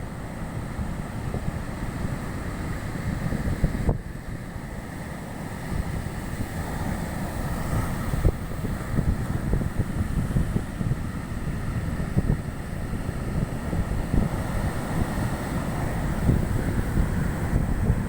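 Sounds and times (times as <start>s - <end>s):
ocean waves breaking: 0.0s - 18.0s
wind buffeting microphone: 0.0s - 18.0s.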